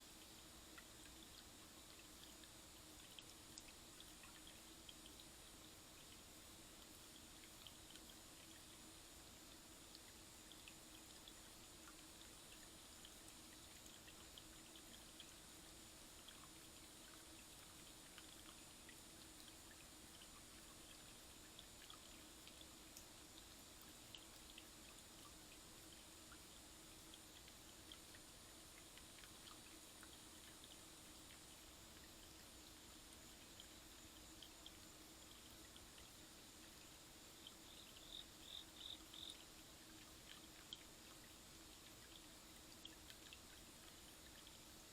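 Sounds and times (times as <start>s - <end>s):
faint hum: 0.0s - 44.9s
faint ticks: 0.0s - 44.9s
low hiss: 0.0s - 44.9s.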